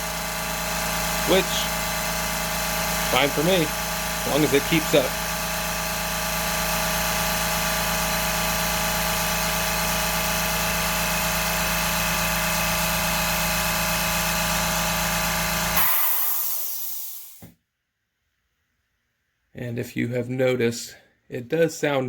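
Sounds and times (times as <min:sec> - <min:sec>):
air compressor motor humming: 0:00.0 - 0:17.5
air hissing: 0:15.8 - 0:17.4.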